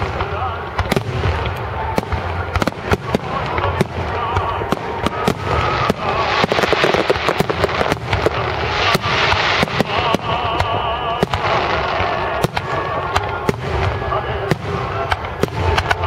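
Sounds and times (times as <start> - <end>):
fireworks bangs and crackling: 0.0 - 16.0.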